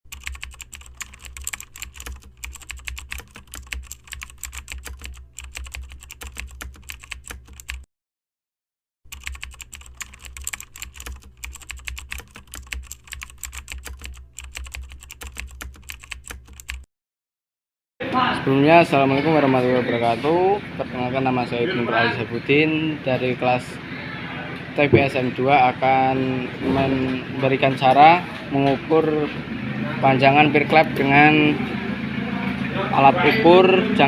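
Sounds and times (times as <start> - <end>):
rapid dense clicking: 0.1 - 7.8, 9.1 - 16.8.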